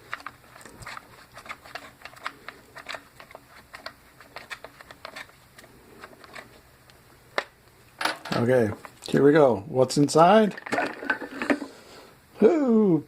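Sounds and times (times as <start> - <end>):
plastic pump parts clicking: 0.0 - 6.4.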